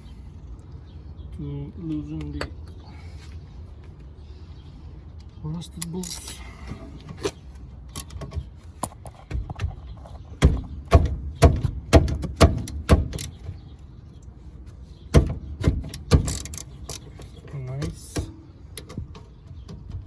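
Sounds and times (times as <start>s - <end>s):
knocks on brake hardware: 10.4s - 13.3s.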